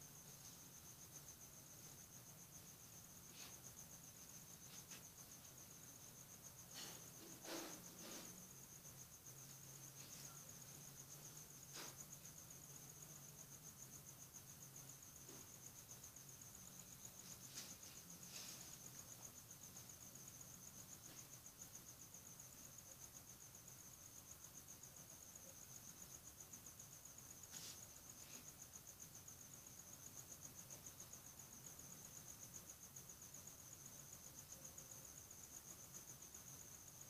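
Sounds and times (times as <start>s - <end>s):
cricket chirping: 0.0s - 37.0s.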